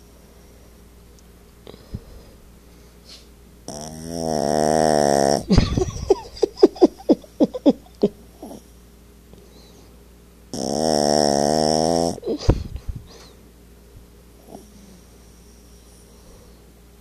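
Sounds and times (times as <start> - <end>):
dog snorting: 3.1 - 5.5, 10.5 - 12.6
dog snoring: 3.6 - 5.6, 8.4 - 8.7, 10.5 - 12.4, 14.4 - 16.5.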